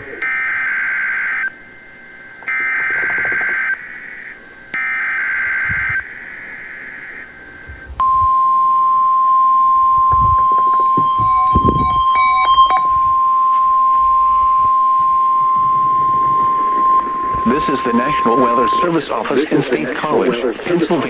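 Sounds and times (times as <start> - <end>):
steady warning alarm tone: 0.0 - 21.0
warbling digital data tones: 2.4 - 4.2, 9.9 - 13.2, 14.1 - 21.0.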